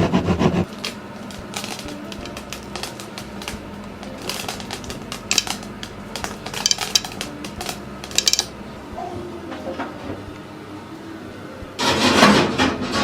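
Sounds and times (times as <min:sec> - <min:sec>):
utensil clinking against bowl: 0:01.5 - 0:08.5.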